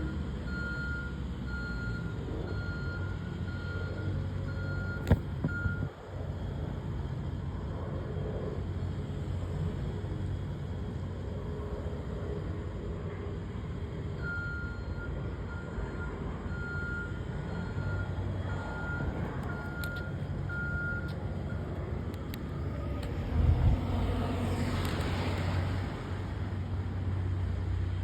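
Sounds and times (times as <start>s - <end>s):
reversing alarm beeping: 0.0s - 5.9s, 14.1s - 21.8s
heavy engine running: 0.0s - 28.0s
low rumble: 18.5s - 26.3s.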